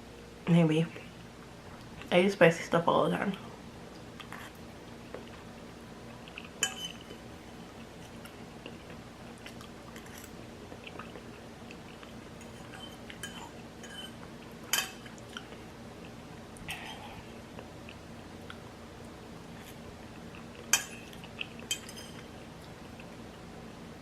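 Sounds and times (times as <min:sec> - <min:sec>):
wet eating sounds: 0:06.1 - 0:13.6, 0:14.2 - 0:23.4.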